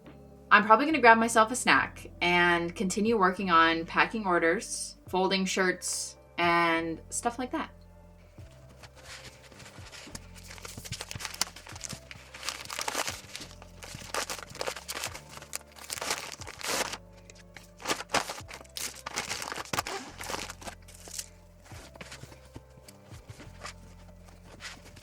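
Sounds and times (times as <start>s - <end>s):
background music: 0.0s - 25.0s
plastic packaging crinkling: 8.8s - 25.0s.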